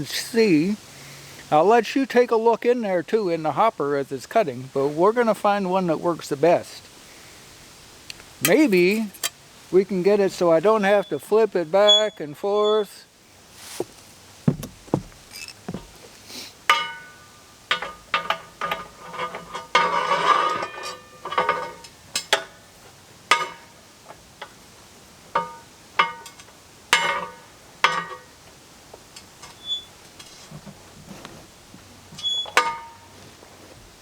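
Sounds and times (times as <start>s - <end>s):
metal scraping rattle: 17.7s - 22.3s.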